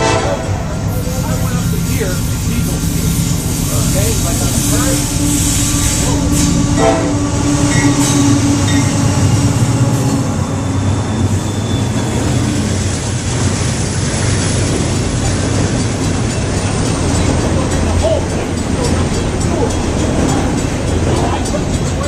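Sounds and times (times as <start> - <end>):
locomotive air horn chord: 0.0 - 12.6
locomotive rumble: 0.0 - 22.0
train wheels clacking on rails: 0.0 - 22.0.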